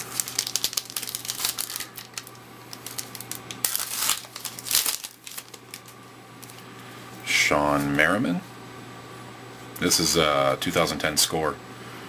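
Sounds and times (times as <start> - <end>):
wrapper crinkling and tearing: 0.0 - 6.6.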